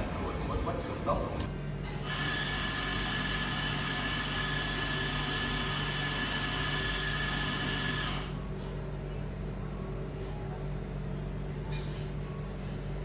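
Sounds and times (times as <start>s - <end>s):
high electric whine: 2.0s - 8.4s.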